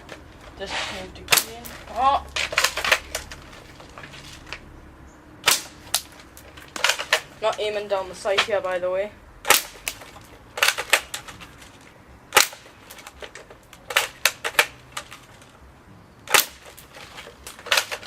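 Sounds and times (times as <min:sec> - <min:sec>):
airsoft rifle shots: 0:05.4 - 0:06.1, 0:09.4 - 0:10.0, 0:12.3 - 0:12.7, 0:16.3 - 0:16.8.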